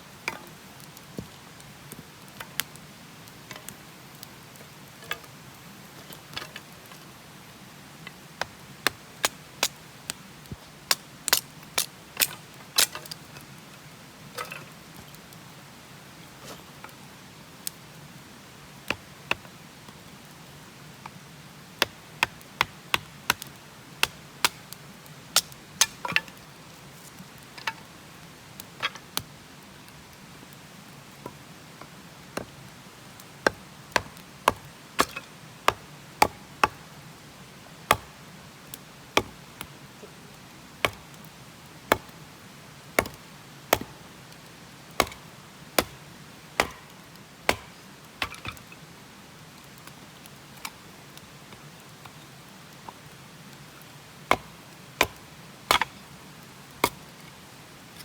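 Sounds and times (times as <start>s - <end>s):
axe chopping wood: 33.5s - 36.8s, 43.0s - 44.0s, 45.0s - 45.2s, 45.8s - 46.0s, 46.6s - 46.9s, 47.5s - 48.6s, 54.3s - 56.0s, 56.8s - 57.0s.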